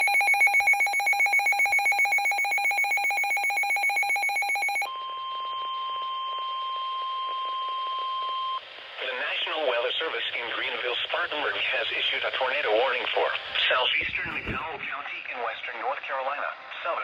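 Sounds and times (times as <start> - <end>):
steady alarm tone: 0.0 - 5.3.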